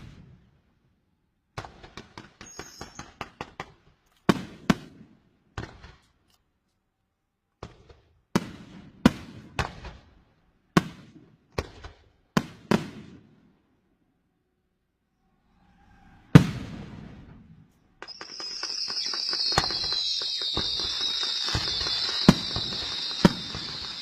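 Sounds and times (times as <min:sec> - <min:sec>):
fireworks crackling pops: 0:01.6 - 0:04.9, 0:05.6 - 0:06.3, 0:16.4 - 0:24.0
fireworks bangs: 0:01.6 - 0:06.0, 0:16.0 - 0:24.0.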